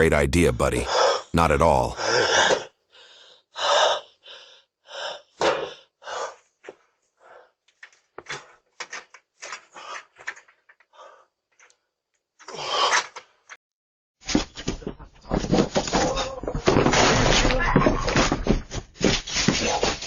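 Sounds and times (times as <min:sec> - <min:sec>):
man breathing hard and gasping: 0:02.0 - 0:06.5.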